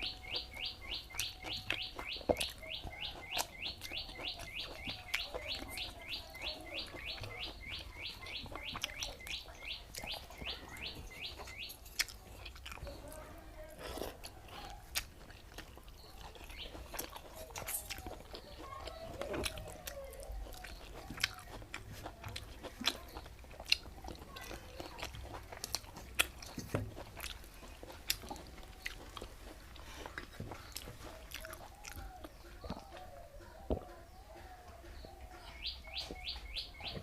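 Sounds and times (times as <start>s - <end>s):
bird chirping rapidly: 0.0s - 11.9s, 16.0s - 17.6s, 30.8s - 37.0s
person chewing wet rice: 0.0s - 37.0s.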